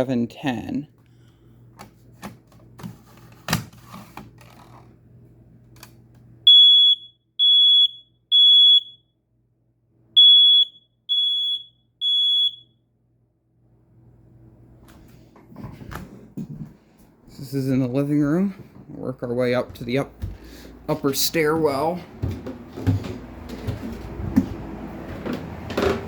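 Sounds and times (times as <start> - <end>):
smoke alarm beeping: 6.5 - 9.2, 10.2 - 12.8.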